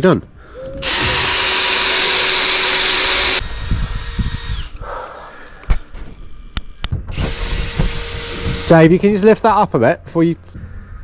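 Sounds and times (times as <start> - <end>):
power tool running: 0.8 - 4.8, 7.1 - 9.0.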